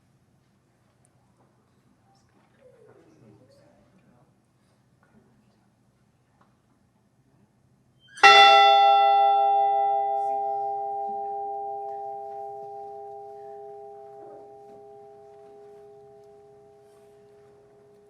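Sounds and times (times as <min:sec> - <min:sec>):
ship's bell ringing: 0:08.2 - 0:18.0.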